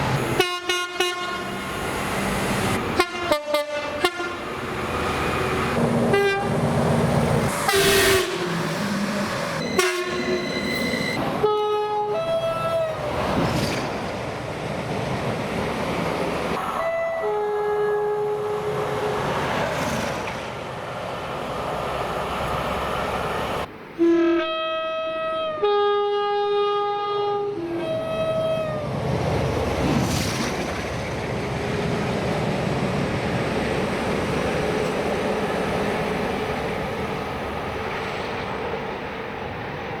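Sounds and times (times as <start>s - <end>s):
train rumbling past: 0.0s - 25.7s, 26.6s - 40.0s
locomotive air horn chords: 0.4s - 1.6s, 3.0s - 4.4s, 6.1s - 6.5s, 7.6s - 8.7s, 9.6s - 13.0s, 16.8s - 19.3s, 24.0s - 28.8s
wheels clacking on rails: 12.3s - 16.8s, 18.7s - 23.7s, 28.3s - 40.0s.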